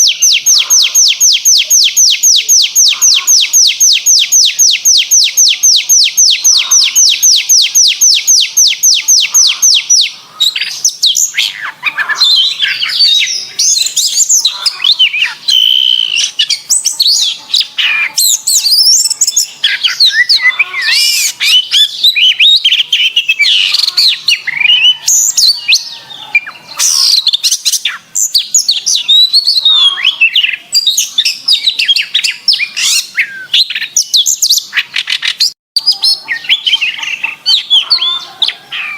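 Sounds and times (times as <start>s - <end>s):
canary singing: 0.0s - 38.9s.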